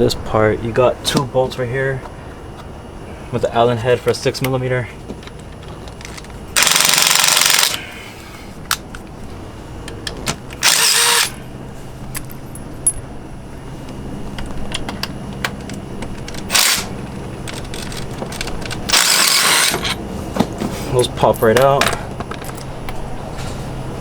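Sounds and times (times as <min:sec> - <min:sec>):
impact wrench hammering: 0:06.6 - 0:07.8, 0:18.9 - 0:20.0.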